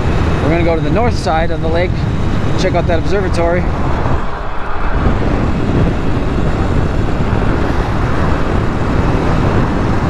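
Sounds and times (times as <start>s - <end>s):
road noise: 0.0s - 10.0s
wind rushing over microphone: 0.0s - 10.0s.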